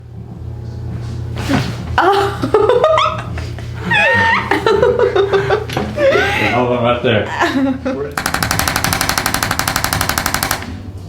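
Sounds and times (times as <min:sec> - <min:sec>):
background music: 0:00.0 - 0:11.0
high-pitched giggling and laughter: 0:02.0 - 0:06.6.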